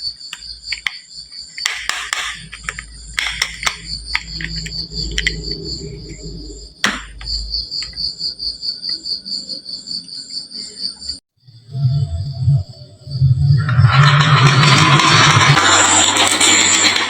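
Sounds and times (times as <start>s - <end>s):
crickets chirping: 0.0s - 17.0s
marbles clicking on wooden run: 1.6s - 5.5s, 13.6s - 17.0s
marbles rolling rumble: 1.8s - 7.3s, 13.3s - 17.0s.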